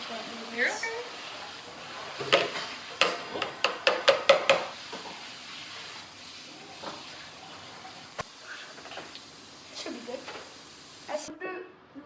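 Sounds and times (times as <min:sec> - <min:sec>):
ice cream scoop knocking container: 0:02.3 - 0:04.7.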